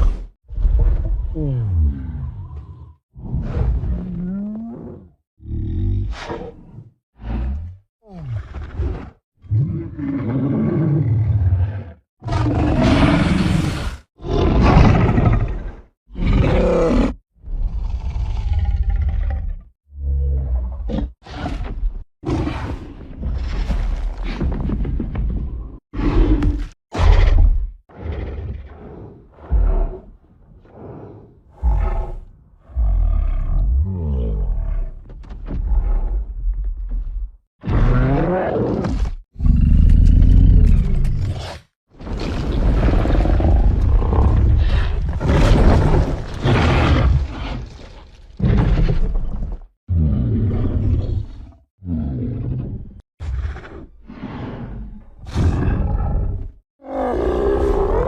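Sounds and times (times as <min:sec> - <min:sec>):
wavering creature growl: 0:00.0 - 0:06.3, 0:07.2 - 0:21.2, 0:37.6 - 0:41.6, 0:49.9 - 0:58.0
deep creature roars and grunts: 0:00.0 - 0:21.2, 0:25.9 - 0:36.6, 0:37.6 - 0:58.0
giant ape roars: 0:09.6 - 0:19.3, 0:49.9 - 0:58.0.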